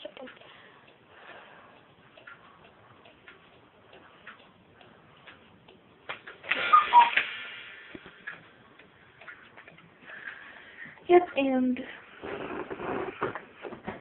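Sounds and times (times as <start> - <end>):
clock ticking: 0.0 - 12.1
clock mechanism clack: 1.7 - 11.9.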